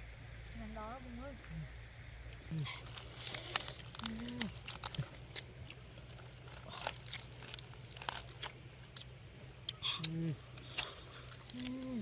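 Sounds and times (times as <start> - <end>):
chewing clicks and crunches: 2.8 - 12.0.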